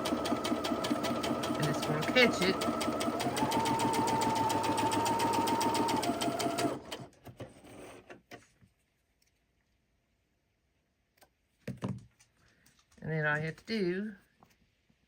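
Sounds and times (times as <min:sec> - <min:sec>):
sewing machine stitching: 0:00.0 - 0:08.2.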